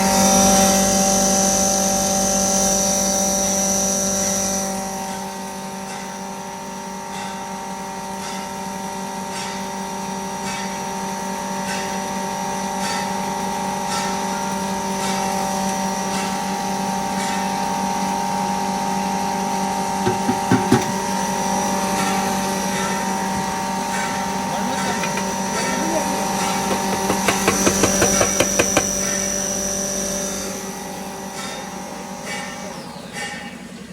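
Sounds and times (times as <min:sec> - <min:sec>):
grinder motor humming: 0:20.1 - 0:21.1, 0:24.2 - 0:31.2
sharp knocks: 0:20.1 - 0:21.1, 0:24.8 - 0:25.6, 0:26.4 - 0:29.2.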